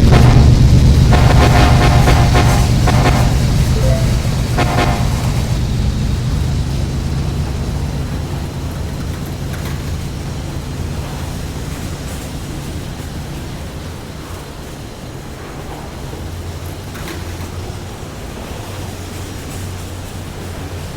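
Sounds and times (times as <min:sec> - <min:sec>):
train horn: 0:00.0 - 0:06.2
train rumbling past: 0:00.0 - 0:20.9.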